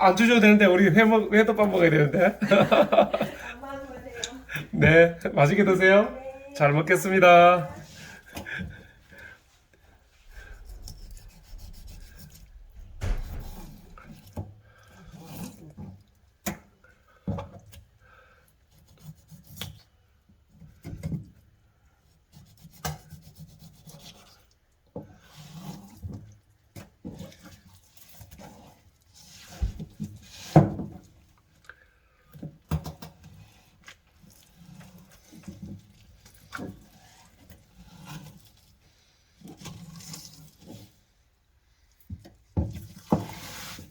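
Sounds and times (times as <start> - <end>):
knife scraping and cutting fish: 10.2 - 16.7, 17.3 - 20.0, 22.0 - 31.3, 32.3 - 41.1, 42.0 - 43.9.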